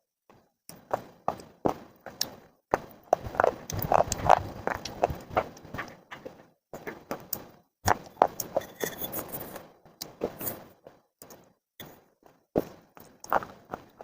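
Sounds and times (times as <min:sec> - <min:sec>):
crunchy clay being chewed: 0:00.7 - 0:12.0, 0:12.6 - 0:14.0.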